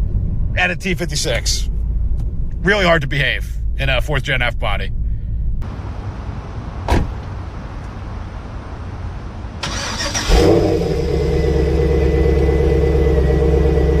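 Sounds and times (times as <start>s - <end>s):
car engine starting and idling: 9.5s - 14.0s.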